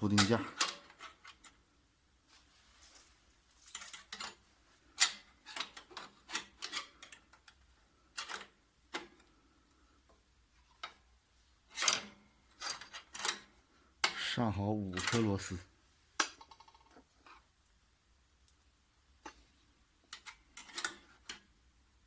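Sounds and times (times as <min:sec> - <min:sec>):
metal parts clicking and scraping: 0:03.0 - 0:07.5, 0:08.2 - 0:09.2, 0:11.7 - 0:14.3, 0:20.1 - 0:21.5.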